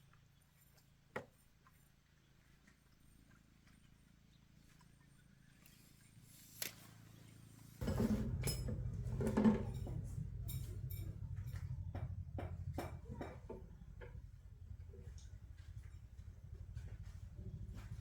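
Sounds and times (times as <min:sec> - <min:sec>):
low steady hum: 0:07.2 - 0:18.0.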